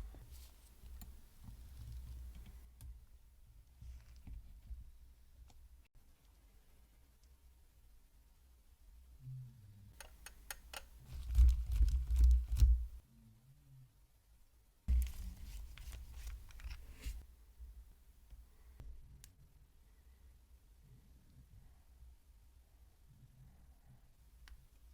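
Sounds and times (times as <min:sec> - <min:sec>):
rubbing and scraping: 0:14.9 - 0:17.2.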